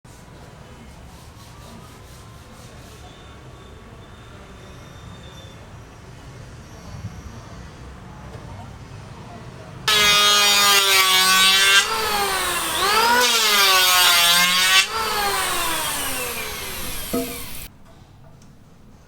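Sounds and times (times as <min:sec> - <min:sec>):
electric power saw: 0:09.9 - 0:17.7.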